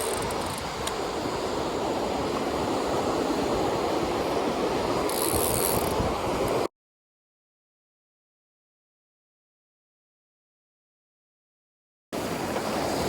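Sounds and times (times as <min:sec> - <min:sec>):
ocean surf crashing: 0:00.0 - 0:06.7, 0:12.2 - 0:13.0
wind buffeting microphone: 0:00.0 - 0:06.7.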